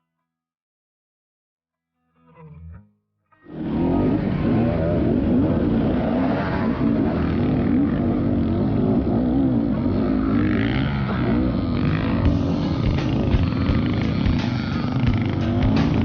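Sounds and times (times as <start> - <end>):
motorcycle engine revving: 3.5 - 16.0.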